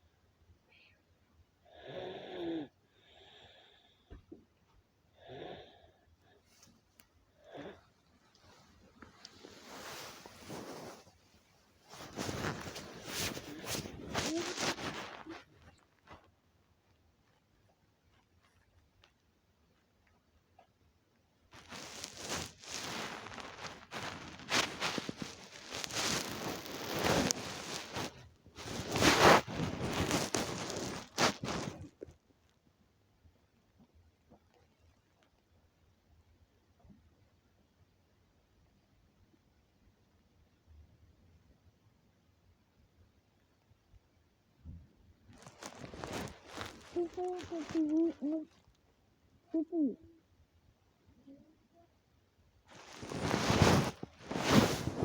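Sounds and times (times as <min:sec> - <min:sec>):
soft breaths: 0:00.6 - 0:16.3, 0:21.6 - 0:32.1, 0:45.3 - 0:48.7, 0:52.7 - 0:55.0
boy snoring: 0:01.7 - 0:03.8, 0:05.2 - 0:05.9.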